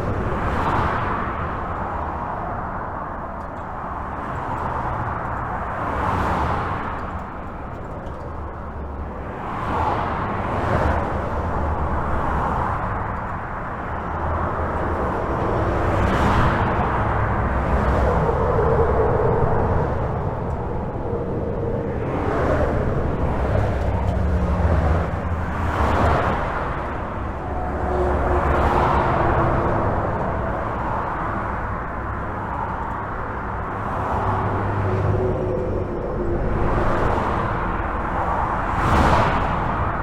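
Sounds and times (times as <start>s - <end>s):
highway traffic noise: 0.0s - 40.0s
vehicles passing: 0.0s - 40.0s
faint steady drone: 14.4s - 38.8s.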